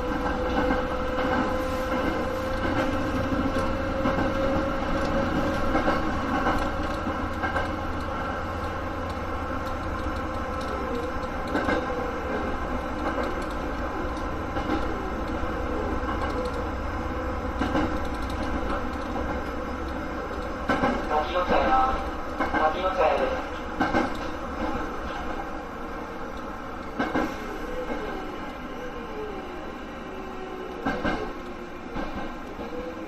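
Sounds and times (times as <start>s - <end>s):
train rumble from inside: 0.0s - 33.0s.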